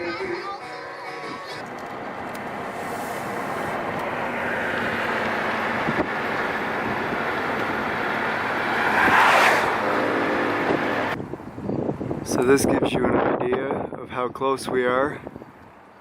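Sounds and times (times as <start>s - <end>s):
vehicle driving past: 1.6s - 11.2s.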